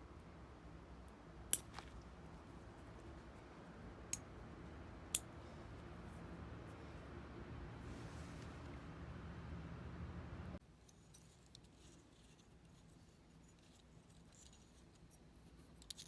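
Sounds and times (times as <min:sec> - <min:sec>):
low steady hum: 0:00.0 - 0:10.6.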